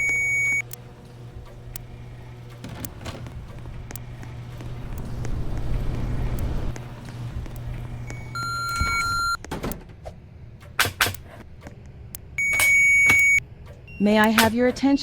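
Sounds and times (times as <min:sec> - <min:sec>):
electronic beep: 0:00.0 - 0:00.6, 0:08.1 - 0:09.4, 0:12.4 - 0:14.1
low electrical hum: 0:00.0 - 0:15.0.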